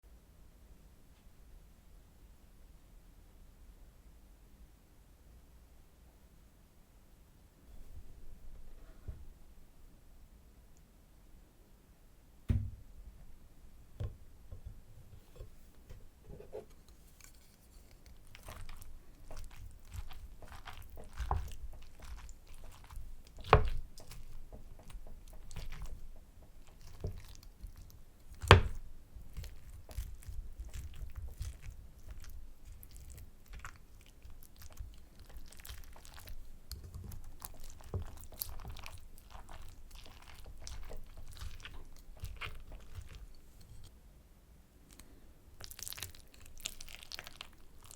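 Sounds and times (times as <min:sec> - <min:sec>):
sharp knocks: 0:12.5 - 0:12.9
wet chewing mouth sounds: 0:16.8 - 0:43.9, 0:44.9 - 0:47.9.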